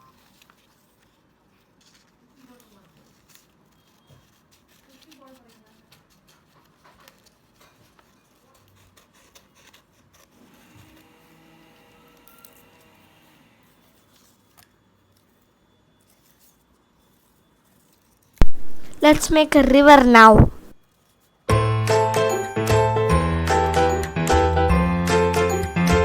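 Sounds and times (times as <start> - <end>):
paper handling noises: 0.1 - 10.4.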